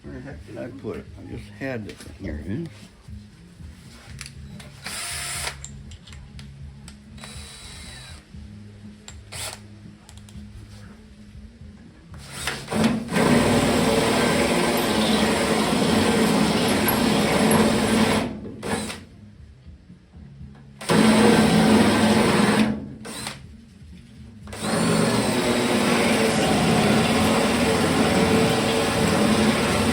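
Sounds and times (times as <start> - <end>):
electric drill boring into steel: 4.8 - 5.7, 7.2 - 8.2, 12.3 - 19.0, 20.8 - 23.4, 24.5 - 29.9.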